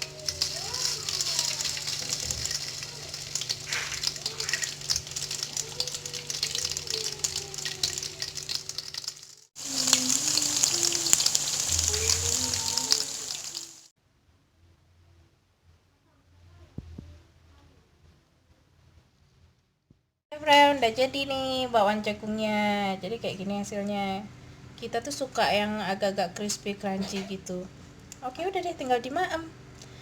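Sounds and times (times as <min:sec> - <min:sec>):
batter frying in hot oil: 0:00.0 - 0:13.9.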